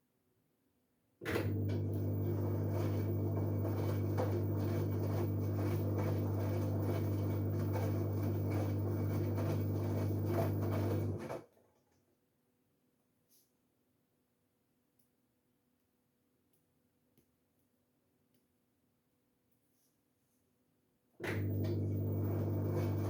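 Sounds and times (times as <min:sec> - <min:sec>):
washing machine humming: 0:01.3 - 0:11.4, 0:21.2 - 0:23.0
water sloshing in washer: 0:01.4 - 0:11.4, 0:21.3 - 0:23.0.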